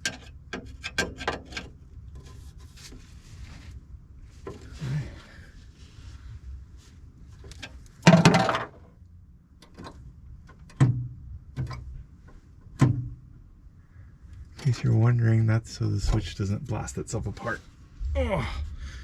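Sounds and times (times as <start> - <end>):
knocks and clatter of parts: 0.0 - 2.4, 7.4 - 8.9, 9.6 - 13.2.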